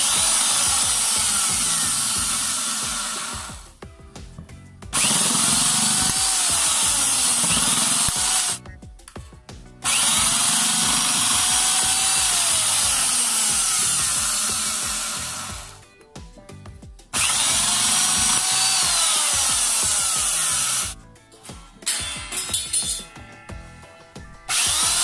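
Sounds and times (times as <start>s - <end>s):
electric metal shear cutter running: 0.0s - 3.6s, 5.0s - 8.6s, 9.8s - 15.8s, 17.2s - 21.0s, 21.8s - 23.5s, 24.5s - 25.0s.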